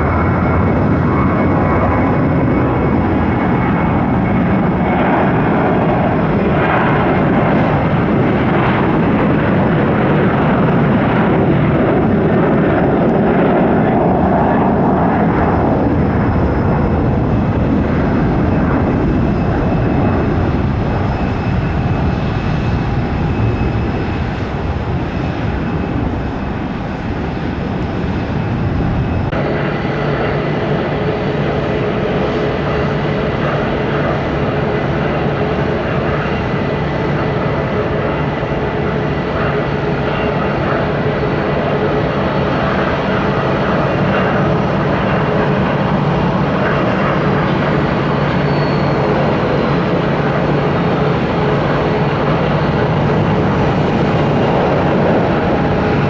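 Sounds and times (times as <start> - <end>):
jet engines roaring: 0.0 - 56.0
jet humming: 0.0 - 56.0.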